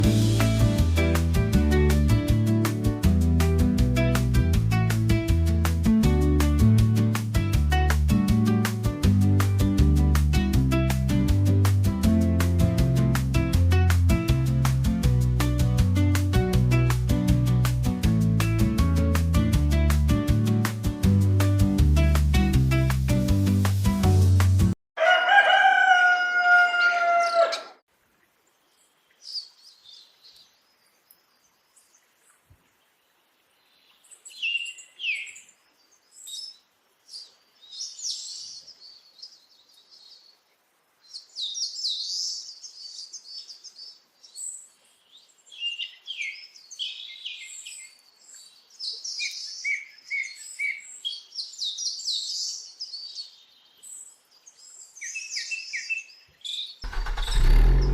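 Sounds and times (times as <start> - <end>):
rooster crowing: 25.0 - 27.8
small birds chirping: 28.3 - 57.9.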